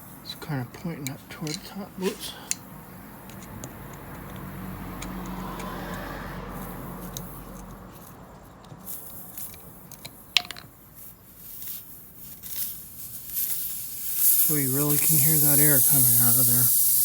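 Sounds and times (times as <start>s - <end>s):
air hissing from tire: 0.0s - 0.6s, 1.9s - 17.0s
screwdriver clicks: 3.2s - 6.0s.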